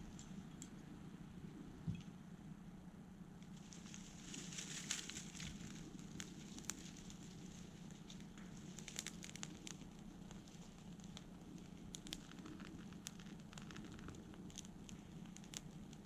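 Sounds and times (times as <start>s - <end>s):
faint crackling and clicking: 3.4s - 16.0s.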